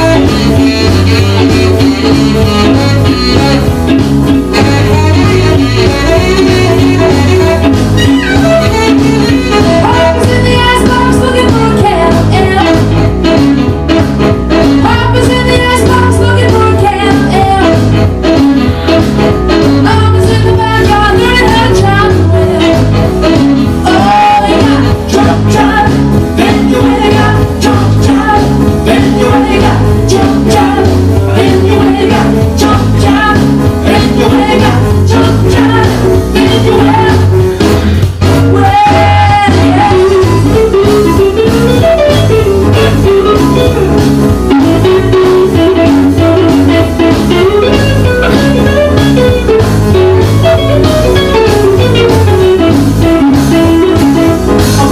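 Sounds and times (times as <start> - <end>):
band with steady beat: 0.0 - 54.9
person singing: 4.5 - 13.4, 19.7 - 37.7, 38.4 - 41.6, 53.6 - 54.9.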